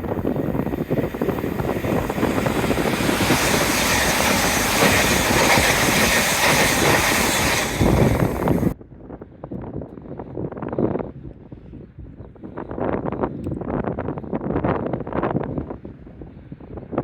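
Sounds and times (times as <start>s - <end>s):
train passing at speed: 0.0s - 8.8s
wind on microphone: 0.0s - 17.0s.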